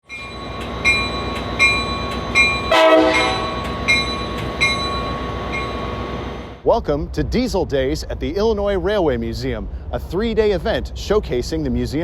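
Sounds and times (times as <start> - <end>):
locomotive bell ringing: 0.0 - 6.5
locomotive engine rumble: 0.0 - 12.0
locomotive horn blast: 2.6 - 3.7.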